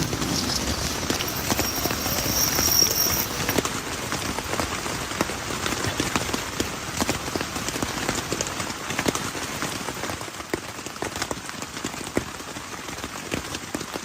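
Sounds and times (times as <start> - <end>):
rain falling: 0.0 - 14.0
raindrops tapping a surface: 4.9 - 14.0.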